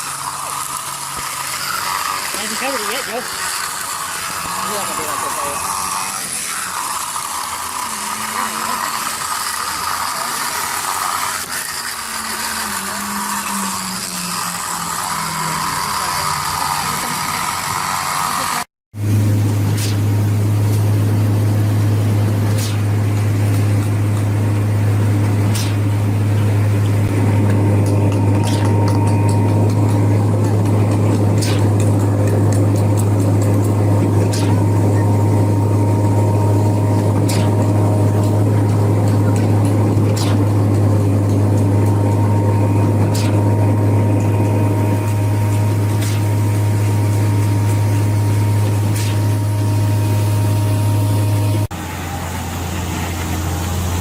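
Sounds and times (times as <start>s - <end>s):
drilling rig machinery humming: 0.0s - 54.0s.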